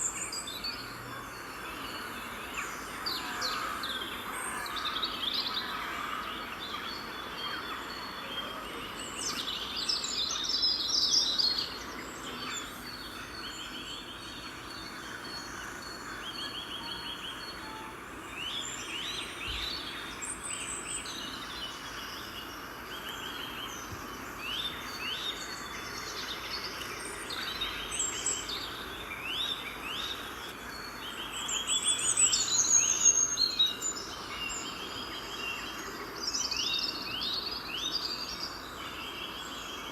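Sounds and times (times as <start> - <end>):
small birds chirping and trilling: 0.0 - 39.9
steady background hiss: 0.0 - 39.9.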